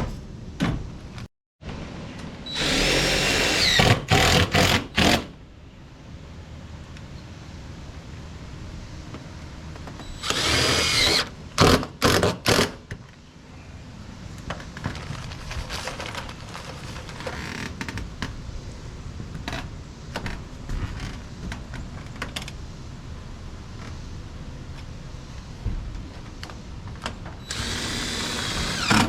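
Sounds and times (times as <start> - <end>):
cordless drill driving screws: 2.5 - 5.3, 10.1 - 12.7, 27.5 - 29.0.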